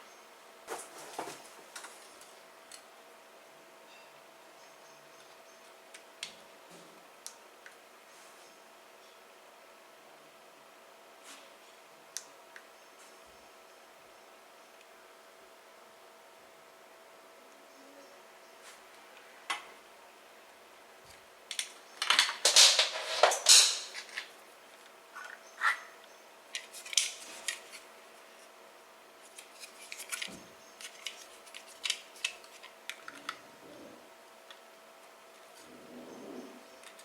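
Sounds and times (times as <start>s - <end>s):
rattling and scraping: 22.4s - 24.3s.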